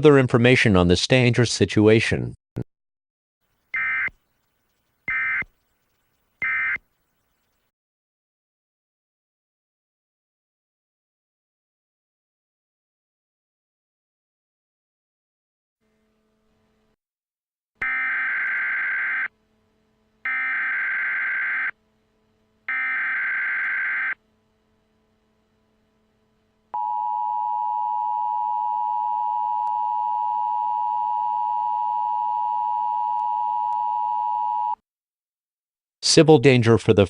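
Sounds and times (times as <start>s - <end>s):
digital header data bursts: 4.7s - 7.4s.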